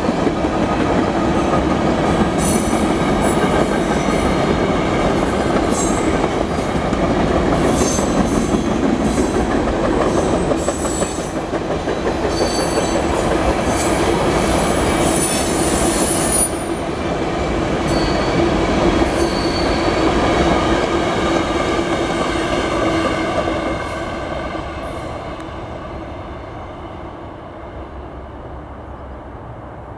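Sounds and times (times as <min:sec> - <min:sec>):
train wheels rumbling on rails: 0:00.0 - 0:29.9
high-pitched wheel squeals: 0:19.1 - 0:20.1.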